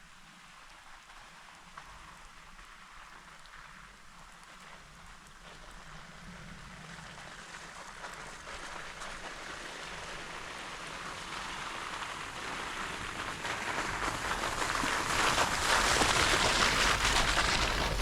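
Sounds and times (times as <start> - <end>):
tyres running through slush: 5.4 - 18.0.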